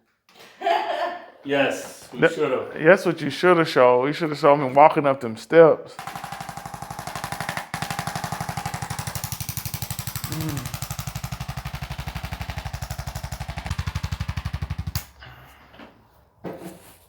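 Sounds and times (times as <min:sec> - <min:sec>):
massage gun hammering: 0:06.0 - 0:15.3.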